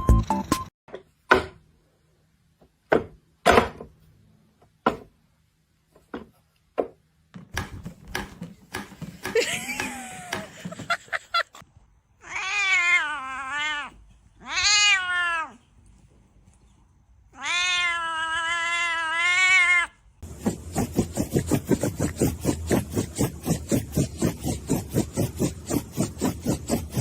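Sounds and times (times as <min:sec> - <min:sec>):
cat meowing: 0:12.2 - 0:15.6, 0:17.3 - 0:20.0
fast short pulses: 0:20.2 - 0:27.0.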